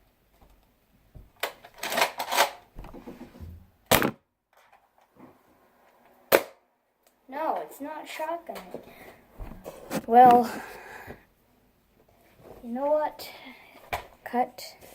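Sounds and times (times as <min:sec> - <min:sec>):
plastic clacks and rattles: 0:01.4 - 0:03.2.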